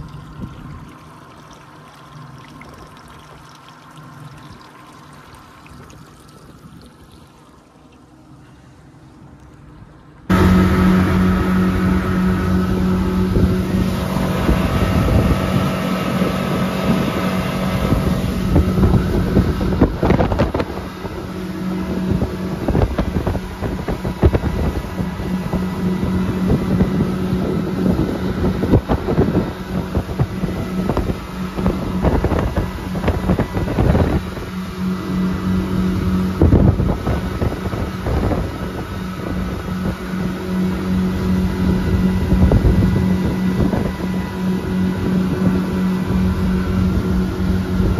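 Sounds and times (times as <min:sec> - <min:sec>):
motorboat engine running: 0:00.0 - 0:47.9
wind buffeting microphone: 0:10.3 - 0:47.9.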